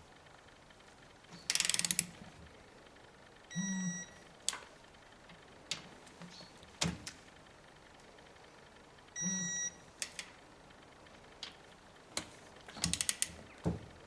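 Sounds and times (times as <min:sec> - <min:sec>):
torque wrench ratcheting clicks: 0:01.5 - 0:02.2, 0:12.8 - 0:13.3
short electronic beep: 0:03.5 - 0:04.2.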